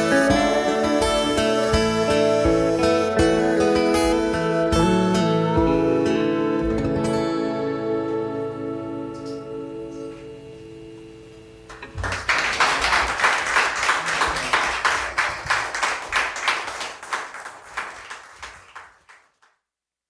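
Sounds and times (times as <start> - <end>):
acoustic guitar chord ringing: 0.0 - 12.0
audience applause: 11.7 - 19.5.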